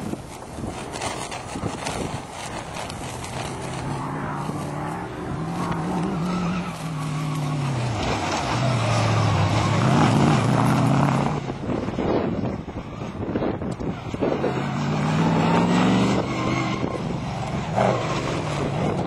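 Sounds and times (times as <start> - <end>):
racing car engine working hard: 0.9 - 19.0.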